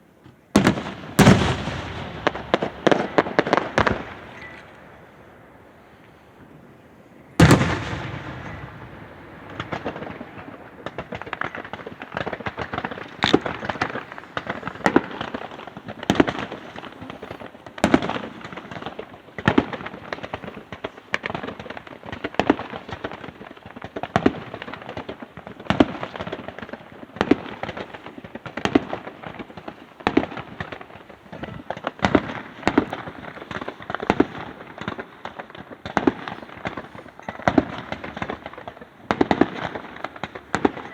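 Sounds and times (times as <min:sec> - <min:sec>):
firework bangs: 0:00.0 - 0:05.5, 0:07.4 - 0:40.9
loud firework boom: 0:07.4 - 0:10.0.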